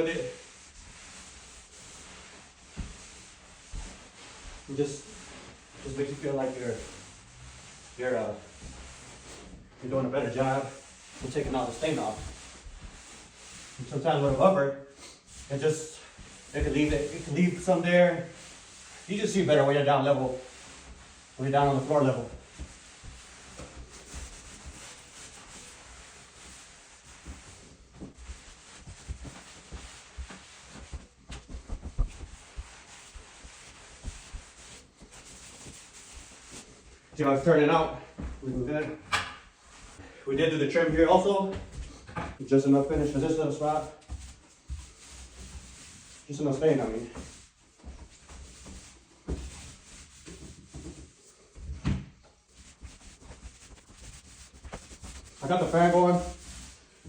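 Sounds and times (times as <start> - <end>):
cloth rubbing on wooden floor: 0.0 - 57.0.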